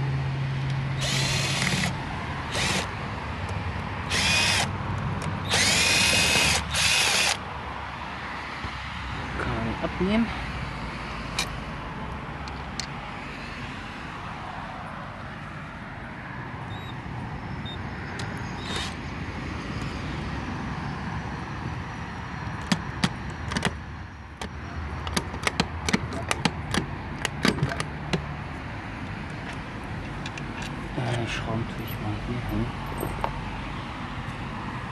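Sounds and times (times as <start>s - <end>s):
road traffic noise: 0.0s - 34.9s.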